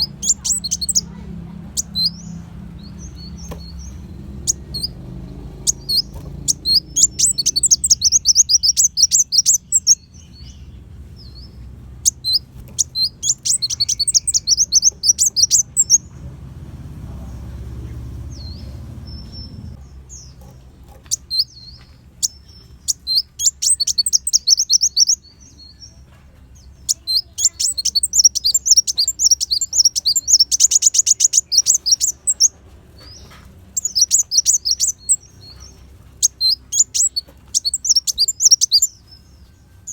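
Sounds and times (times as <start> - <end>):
sunbird chattering trills: 0.0 - 16.2, 17.2 - 39.9.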